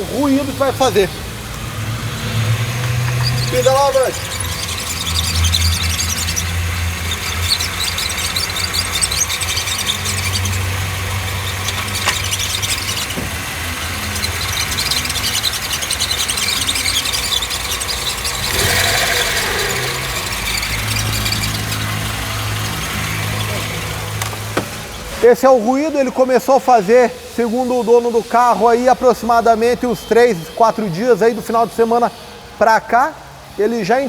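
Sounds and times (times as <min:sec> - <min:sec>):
car engine idling: 0:00.0 - 0:25.1
chirping squeal from clutch bearing: 0:03.0 - 0:23.9.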